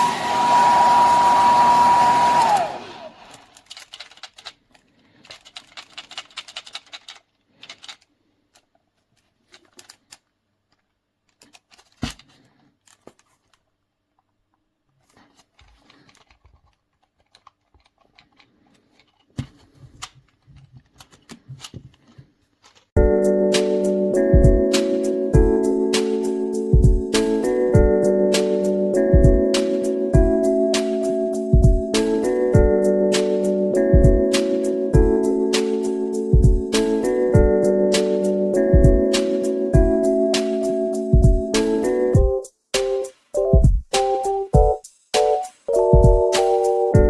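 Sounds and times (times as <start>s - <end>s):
hair dryer winding down: 0.0s - 3.5s
handling clicks and rustles: 3.2s - 23.0s
music: 23.0s - 47.0s.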